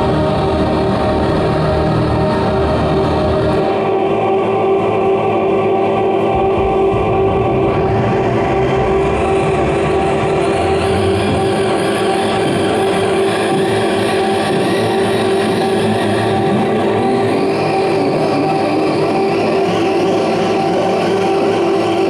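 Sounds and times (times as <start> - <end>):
steady droning tone: 0.0 - 22.0
amplified guitar noise: 5.8 - 17.0.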